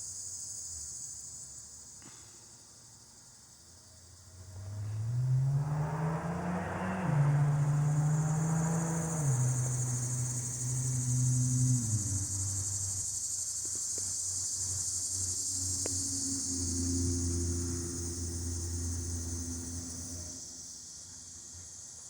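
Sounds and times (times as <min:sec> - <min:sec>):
cicadas trilling: 0:00.0 - 0:22.0
low engine hum: 0:04.2 - 0:20.7.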